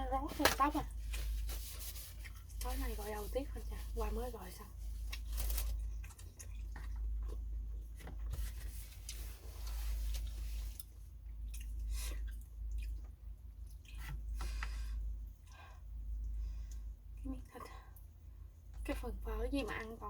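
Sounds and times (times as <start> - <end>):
low steady hum: 0.0 - 20.0
person chewing with mouth smacks: 5.0 - 8.0, 9.0 - 14.2.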